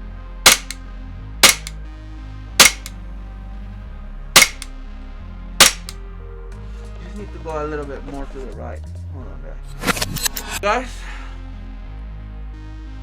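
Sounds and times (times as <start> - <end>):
airsoft pistol shots: 0.5 - 0.8, 1.4 - 1.7, 2.6 - 2.9, 4.4 - 4.7, 5.6 - 5.9.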